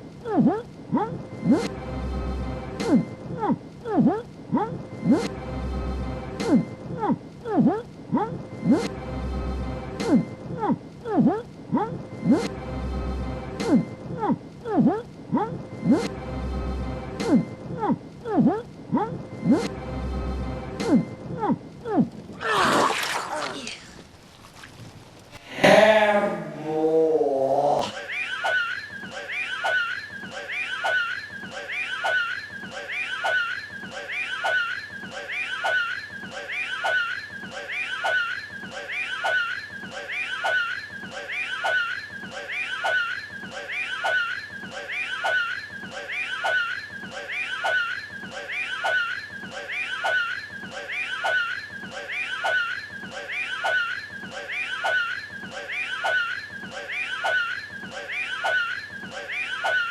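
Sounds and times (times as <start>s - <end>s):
high-pitched vocal strain: 25.4s - 28.0s.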